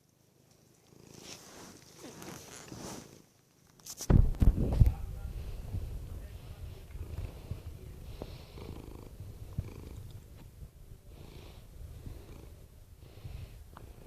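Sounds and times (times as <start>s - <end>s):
cat purring: 0.0s - 14.0s
soft cat breath: 5.0s - 10.2s, 10.9s - 14.0s.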